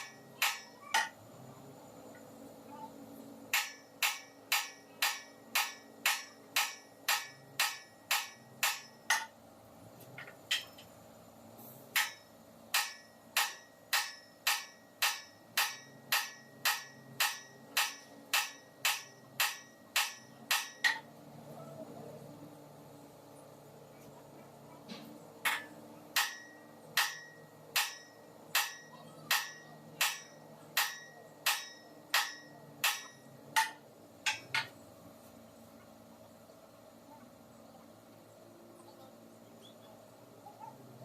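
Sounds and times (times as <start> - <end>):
hammer strikes: 0.0 - 1.2, 3.5 - 9.4, 11.9 - 21.1, 24.9 - 34.8.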